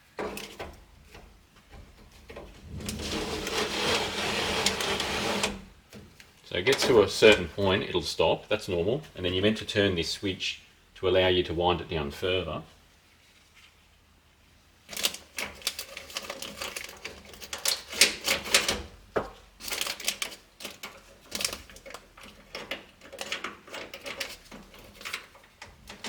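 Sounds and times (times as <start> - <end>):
window winder clicking and rattling: 0.0 - 5.7, 19.6 - 26.0.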